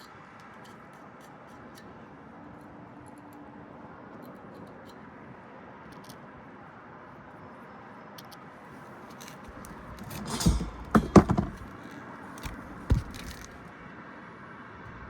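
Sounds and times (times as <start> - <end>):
metal parts clanking: 9.2 - 13.6
knocks: 9.5 - 11.7, 12.4 - 13.6.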